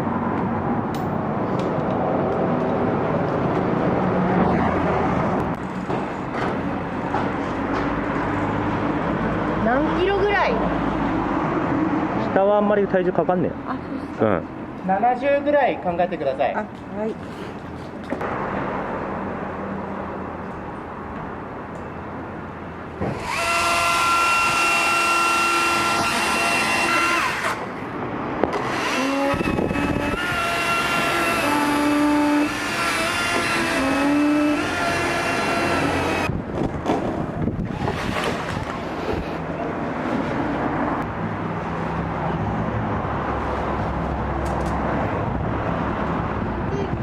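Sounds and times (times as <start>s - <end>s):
chainsaw cutting: 23.1s - 27.7s, 28.6s - 36.3s.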